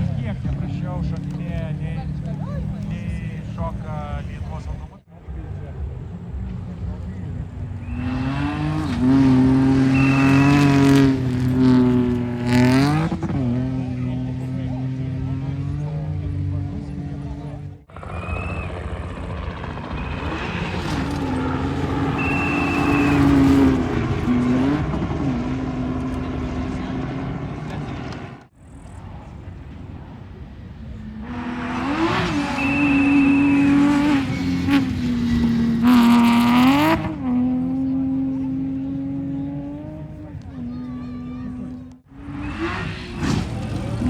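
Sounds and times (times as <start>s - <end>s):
gravel noise: 0.0s - 15.0s, 15.9s - 38.0s, 39.8s - 44.0s
high whistle: 7.8s - 8.7s, 9.9s - 11.1s, 18.0s - 18.9s, 22.0s - 23.8s, 32.3s - 34.7s
rally car engine at high revs: 7.8s - 28.5s, 30.8s - 44.0s.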